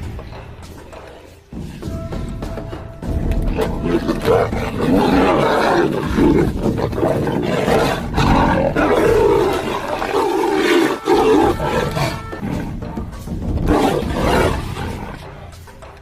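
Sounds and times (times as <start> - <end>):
large animals roaring: 3.5 - 12.8, 13.6 - 15.3.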